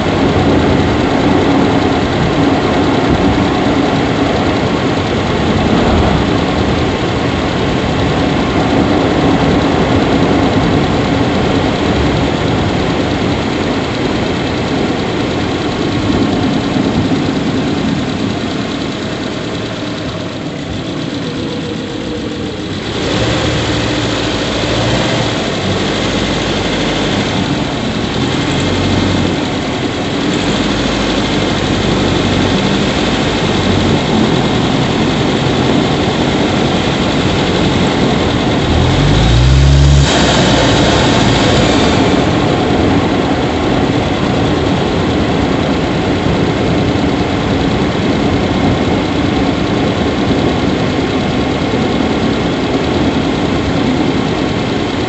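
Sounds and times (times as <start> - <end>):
engine squeak: 0.0 - 44.0
car engine idling: 0.0 - 55.0.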